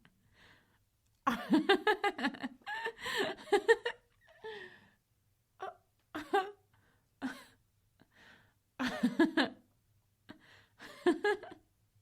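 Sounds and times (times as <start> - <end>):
woman giggling: 1.3 - 4.5, 8.8 - 9.6.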